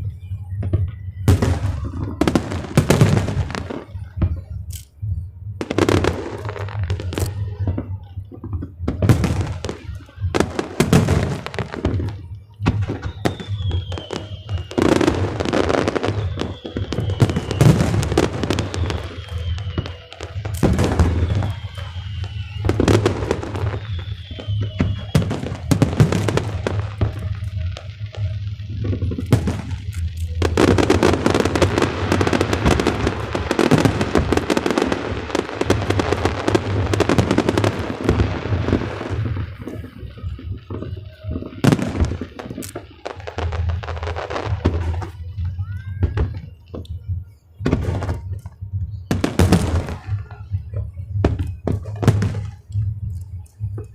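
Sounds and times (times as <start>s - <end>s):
crackling firework bursts: 0.0s - 53.9s
music: 0.0s - 53.9s
falling firework whistles: 9.0s - 46.7s.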